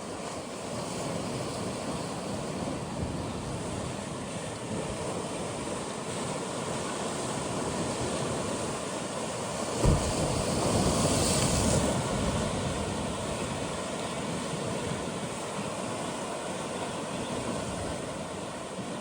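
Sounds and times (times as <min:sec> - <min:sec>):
waves washing among rocks: 0:04.7 - 0:18.2
hissing surf surge: 0:09.7 - 0:13.7
low wave thump: 0:09.8 - 0:12.5.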